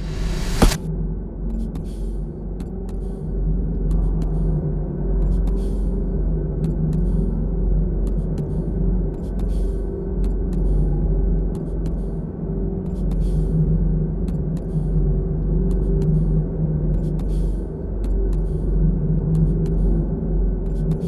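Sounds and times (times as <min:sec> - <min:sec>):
low rumble: 0:00.0 - 0:00.8.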